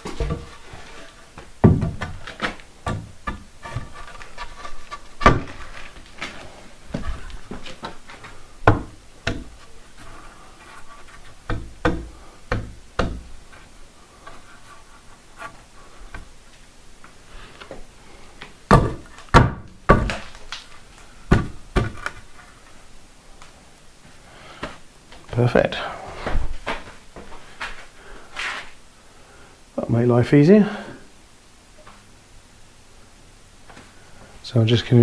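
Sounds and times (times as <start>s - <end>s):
timber handling noise: 0.0s - 25.5s
wooden knocks and taps: 1.4s - 5.6s, 8.6s - 9.6s, 11.4s - 13.4s.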